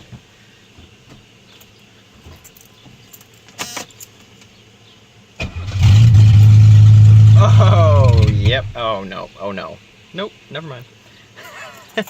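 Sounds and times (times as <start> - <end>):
low background hiss: 0.0 - 5.8, 6.5 - 12.0
car keys jingling: 2.4 - 4.2.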